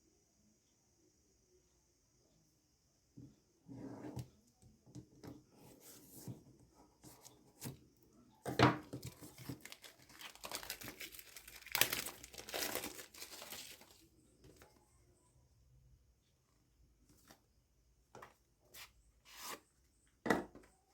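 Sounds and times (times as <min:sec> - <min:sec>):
wrapping crinkling and tearing: 0:09.0 - 0:14.1.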